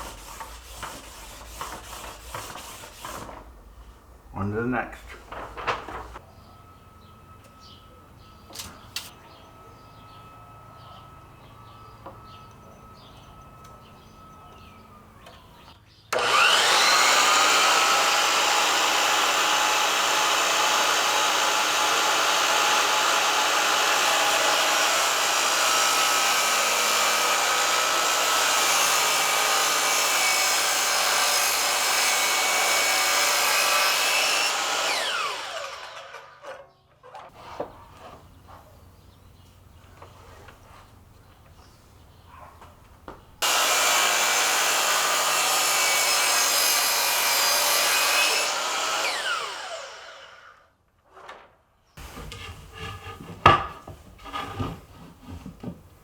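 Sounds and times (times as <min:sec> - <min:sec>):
power tool motor running: 0:16.1 - 0:36.4, 0:43.4 - 0:50.5.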